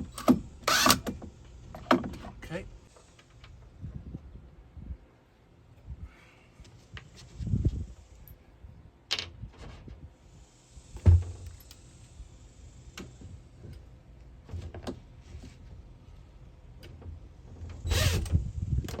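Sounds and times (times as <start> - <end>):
thump: 11.0 - 11.5.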